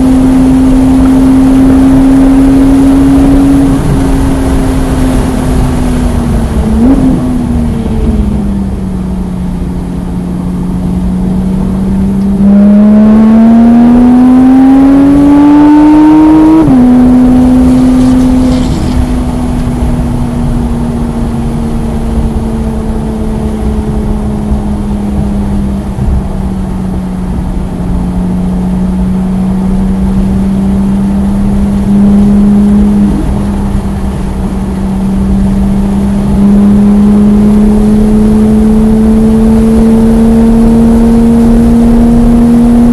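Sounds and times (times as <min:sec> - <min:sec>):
sports car engine revving: 0:00.0 - 0:42.9.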